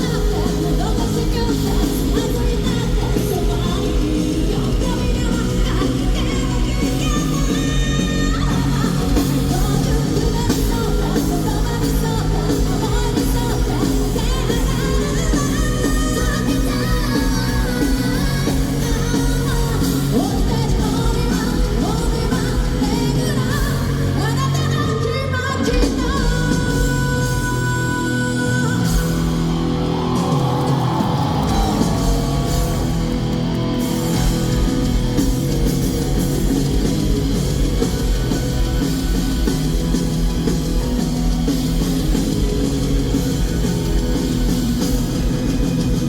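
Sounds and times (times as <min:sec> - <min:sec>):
live rock band playing: 0:00.0 - 0:46.0
woman singing: 0:00.0 - 0:46.0.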